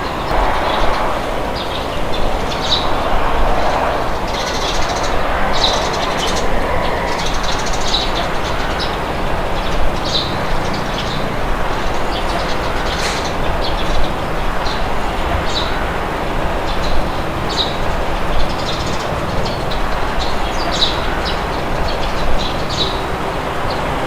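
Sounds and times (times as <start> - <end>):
birds chirping: 0.0 - 24.0
wind blowing: 0.0 - 24.0.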